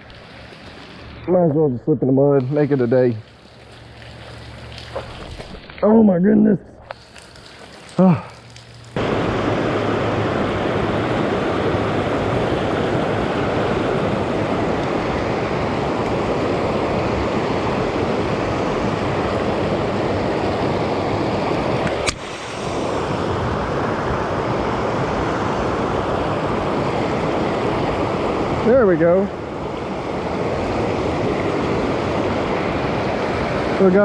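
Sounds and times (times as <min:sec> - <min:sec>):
heavy rain on water: 0:06.9 - 0:34.0.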